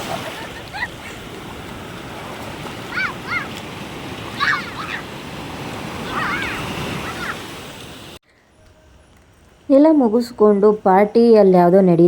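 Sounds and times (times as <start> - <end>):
sea surf washing onto beach: 0.0 - 8.2
high-pitched voice calls: 6.0 - 7.5.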